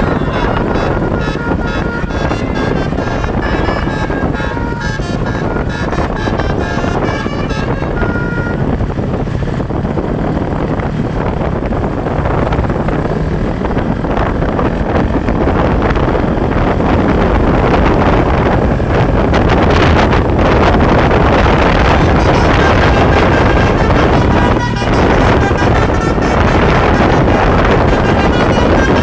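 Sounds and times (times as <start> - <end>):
musical bus horn: 0.0 - 9.3, 16.6 - 29.0
bus engine and tyre noise: 0.0 - 29.0
wind buffeting microphone: 0.0 - 29.0.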